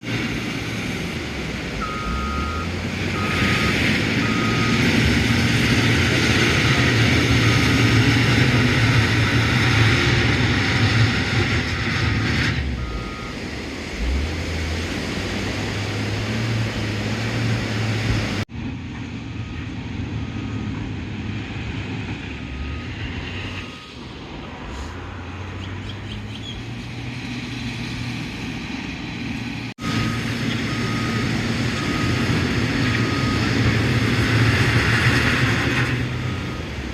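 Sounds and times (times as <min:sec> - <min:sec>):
bulldozer diesel engine: 0:00.0 - 0:36.9
backup alarm beeping: 0:01.8 - 0:05.0, 0:11.6 - 0:13.4, 0:29.8 - 0:34.2.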